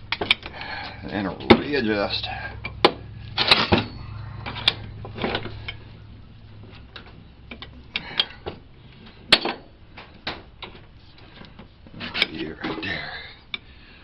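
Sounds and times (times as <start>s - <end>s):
low hum: 0.0s - 9.9s.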